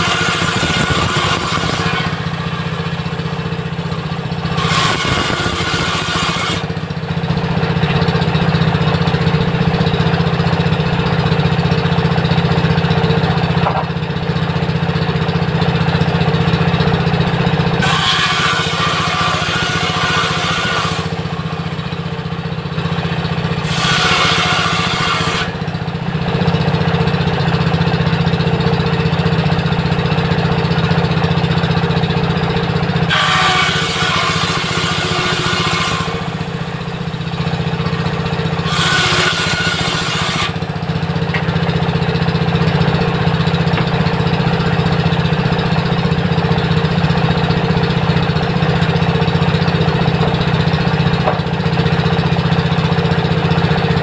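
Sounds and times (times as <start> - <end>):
circular saw cutting wood: 0.0 - 54.0
diesel engine running: 0.0 - 54.0.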